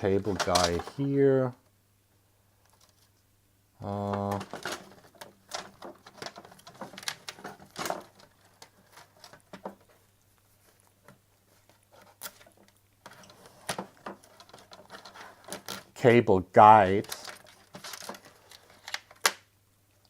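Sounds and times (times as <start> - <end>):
plastic parts clicking and tapping: 4.0 - 10.0, 12.0 - 16.0, 17.0 - 19.4.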